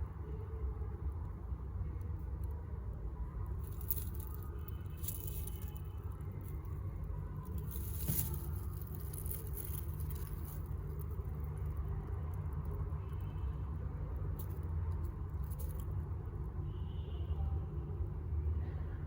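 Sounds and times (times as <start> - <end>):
steady low rumble: 0.8 - 16.4
rabbits rustling and scratching: 3.6 - 11.8.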